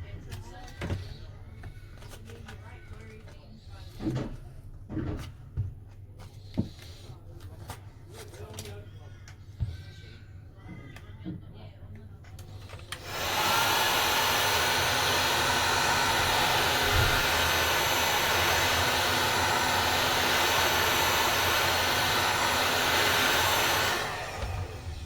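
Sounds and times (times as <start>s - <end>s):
heat gun blowing hot air: 12.8s - 25.0s.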